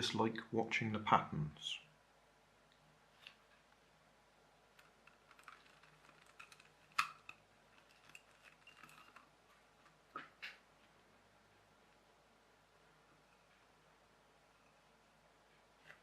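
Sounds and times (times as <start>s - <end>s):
plastic puzzle cube clicking: 4.8s - 9.3s.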